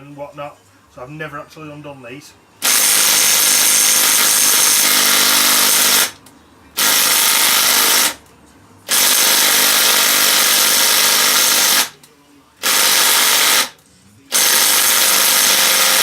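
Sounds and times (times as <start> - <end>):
impact wrench hammering: 2.6 - 6.2, 6.8 - 8.2, 8.9 - 11.9, 12.6 - 16.0.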